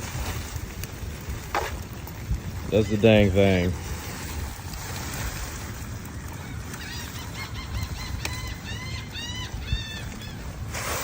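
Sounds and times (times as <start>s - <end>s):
water noise: 0.0s - 11.0s
wind: 0.0s - 11.0s
bird squawking: 6.4s - 10.7s.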